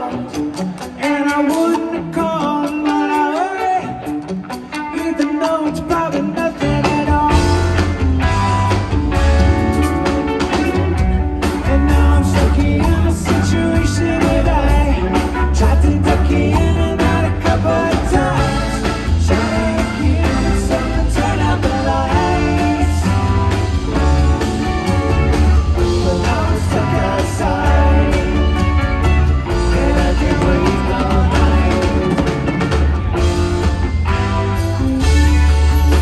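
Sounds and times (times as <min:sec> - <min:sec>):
person singing: 0:00.0 - 0:07.7, 0:11.6 - 0:23.5, 0:25.8 - 0:32.6
bass guitar: 0:00.0 - 0:36.0
drums: 0:00.0 - 0:36.0
electric guitar: 0:00.0 - 0:36.0.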